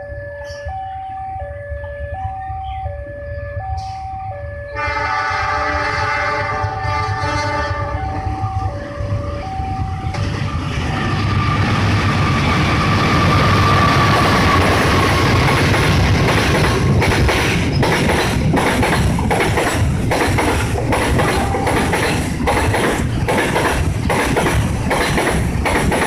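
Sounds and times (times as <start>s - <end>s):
level-crossing alarm chimes: 0.0s - 4.8s, 8.0s - 10.2s
train rumble and wheel noise: 0.0s - 26.0s
train horn: 4.7s - 8.4s, 21.2s - 22.0s.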